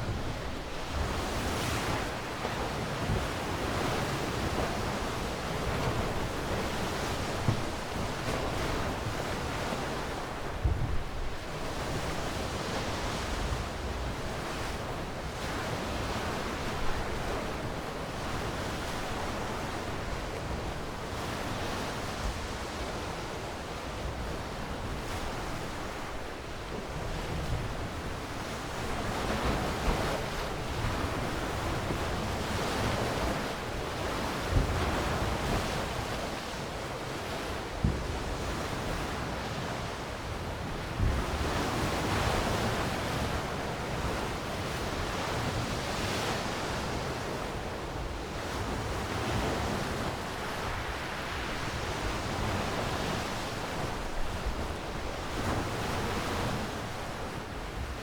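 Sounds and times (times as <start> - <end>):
waves breaking: 28.6 - 58.0.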